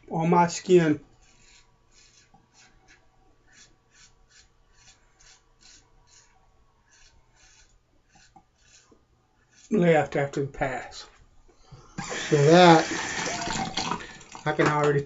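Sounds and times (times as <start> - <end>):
razor scraping stubble: 1.2 - 10.0.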